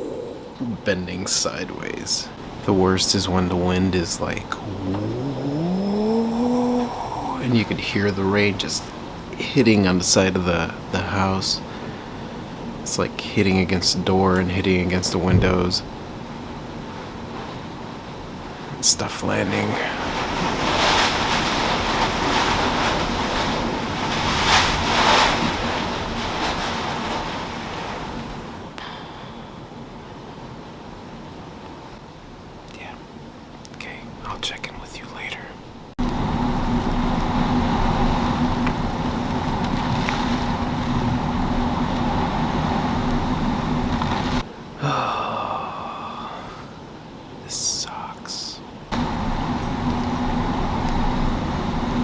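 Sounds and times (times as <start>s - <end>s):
low hum: 0.0s - 1.2s, 2.2s - 17.5s, 35.6s - 46.8s, 48.9s - 52.0s
hurricane wind: 0.0s - 52.0s
rain beating against house: 0.0s - 52.0s.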